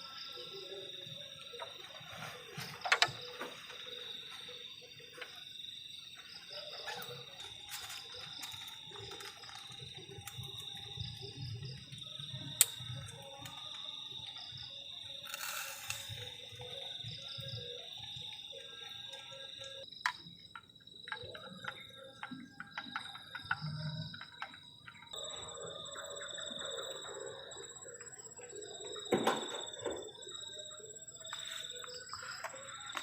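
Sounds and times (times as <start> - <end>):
crickets trilling: 0.0 - 33.0
short hiss: 15.3 - 16.2.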